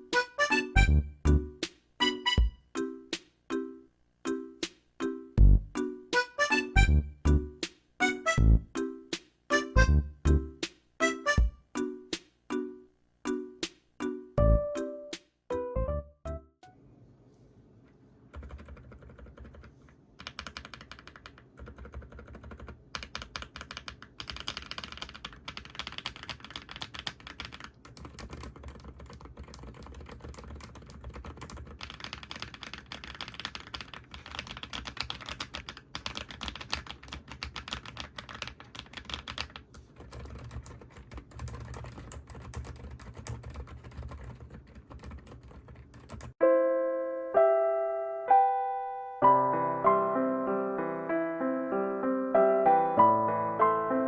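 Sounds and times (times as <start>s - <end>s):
piano notes: 4.4s - 16.7s, 46.4s - 54.0s
mechanical keyboard typing: 18.3s - 46.4s.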